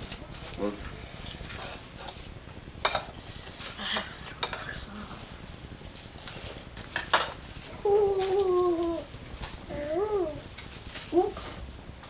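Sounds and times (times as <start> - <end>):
kitchen utensils and dishes clinking: 2.8 - 3.2.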